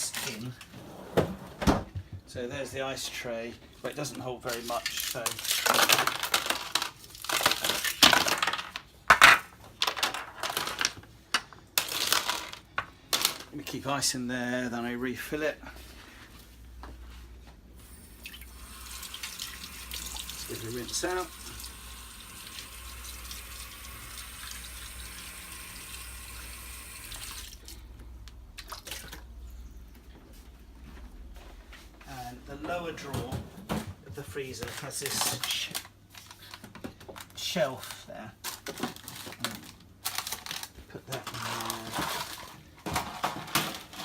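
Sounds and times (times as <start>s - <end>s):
ice cubes clattering in plastic tray: 4.4s - 11.0s, 11.8s - 13.5s, 34.7s - 35.9s, 37.2s - 44.0s.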